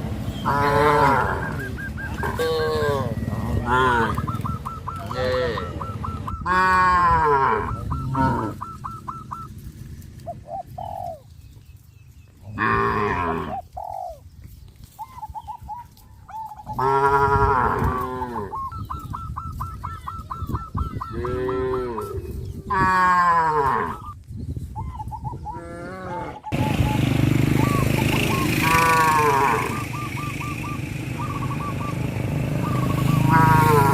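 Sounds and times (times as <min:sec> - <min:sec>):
cattle mooing: 0:00.4 - 0:04.2, 0:05.0 - 0:08.6, 0:12.4 - 0:13.6, 0:16.8 - 0:18.6, 0:21.1 - 0:24.0, 0:25.5 - 0:26.6, 0:28.5 - 0:29.9, 0:33.0 - 0:33.9.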